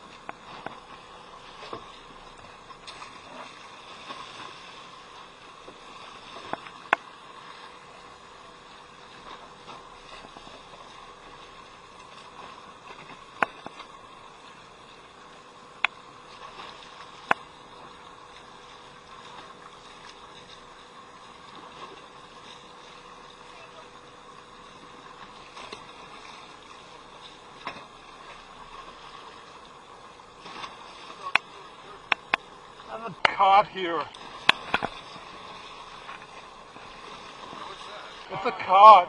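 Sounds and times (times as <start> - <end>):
boat engine hum: 0.0 - 39.0
water washing: 15.7 - 39.0.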